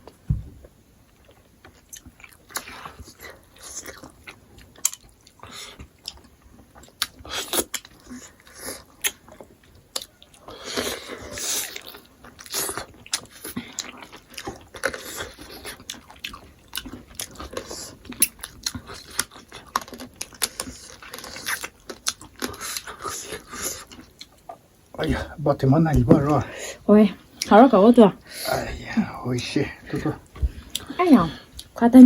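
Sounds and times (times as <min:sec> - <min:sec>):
people chewing and crunching: 0:00.0 - 0:32.0.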